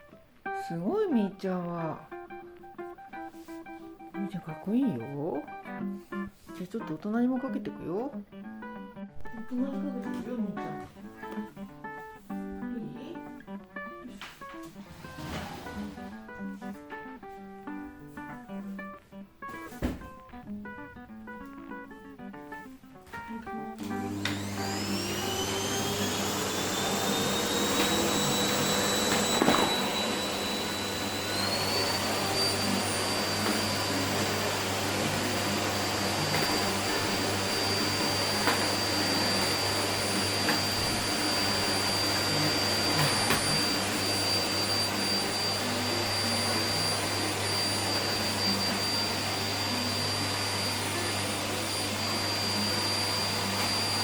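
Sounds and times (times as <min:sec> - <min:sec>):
vacuum cleaner motor whine: 0:15.0 - 0:16.3, 0:23.5 - 0:54.0
vacuum cleaner knocks: 0:25.6 - 0:32.3, 0:36.1 - 0:41.2, 0:42.7 - 0:43.8.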